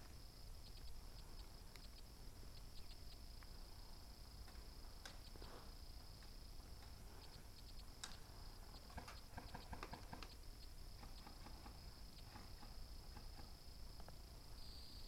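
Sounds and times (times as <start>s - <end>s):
faint high hiss: 0.0s - 15.0s
faint clicks and taps: 4.4s - 5.5s, 6.2s - 10.4s.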